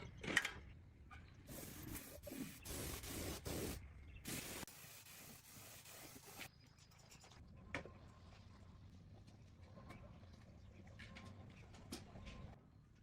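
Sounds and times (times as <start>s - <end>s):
hissing spray: 1.5s - 6.5s.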